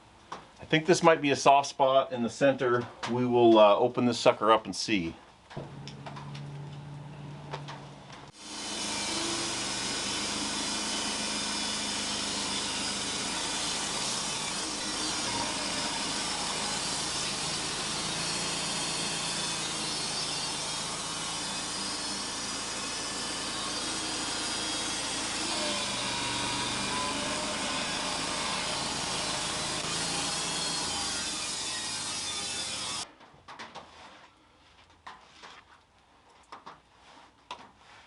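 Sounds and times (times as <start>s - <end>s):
band sawmill cutting log: 8.3s - 33.0s.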